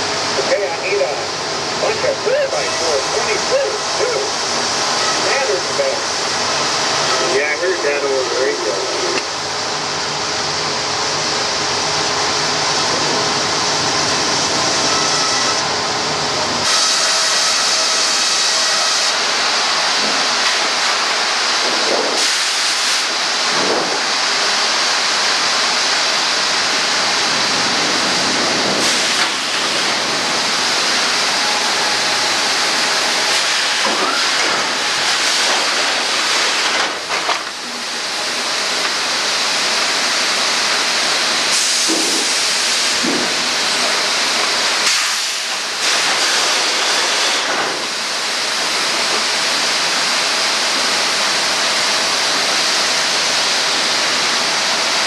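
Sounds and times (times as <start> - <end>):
sawmill machinery hissing: 0.0 - 55.0
faint machine whines: 14.6 - 19.1.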